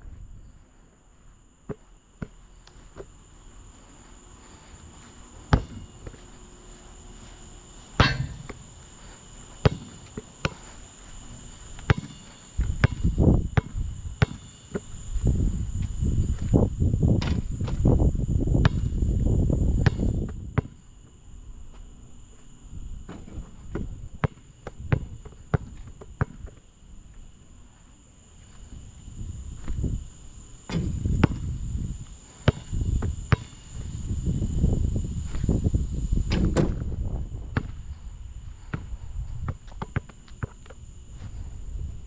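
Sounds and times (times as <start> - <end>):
insects chirring: 0.0 - 42.0
basketball bouncing on hard court: 5.5 - 6.2, 9.6 - 10.6, 11.8 - 14.9, 18.6 - 18.9, 32.5 - 33.7.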